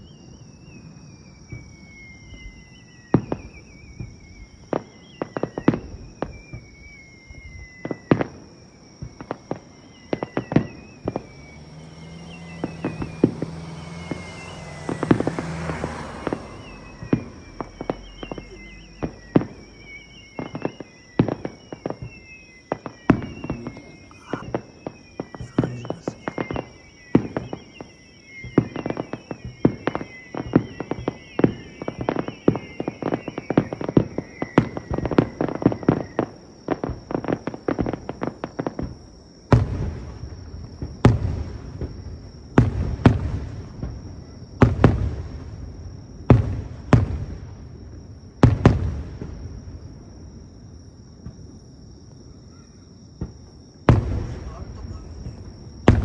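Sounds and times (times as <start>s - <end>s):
firework bangs and crackles: 0.0s - 56.0s
firework whistles falling in pitch: 0.0s - 56.0s
deep firework booms: 1.4s - 51.7s, 53.2s - 56.0s.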